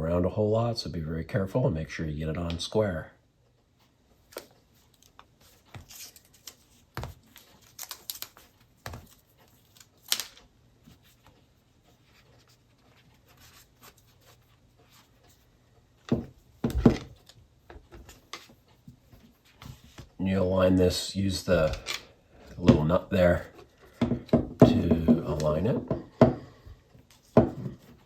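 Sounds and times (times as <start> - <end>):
scratching and rubbing noises: 10.8 - 15.5.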